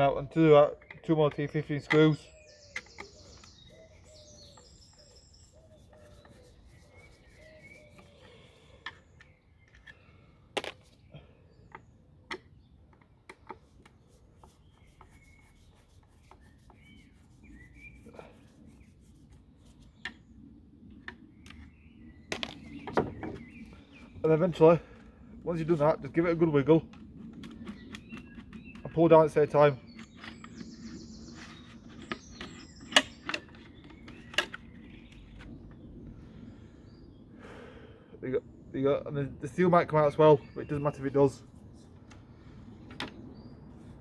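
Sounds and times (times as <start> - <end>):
plastic parts knocking: 22.3 - 23.6.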